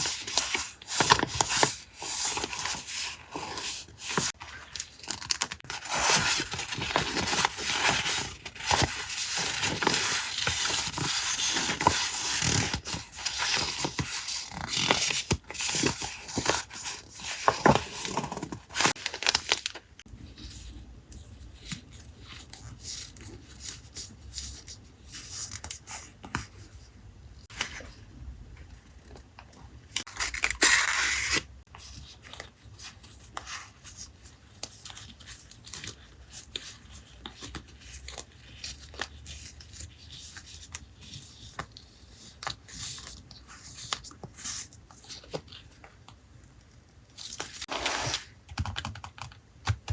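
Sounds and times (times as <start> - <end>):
paper rustling: 0.0 - 20.6.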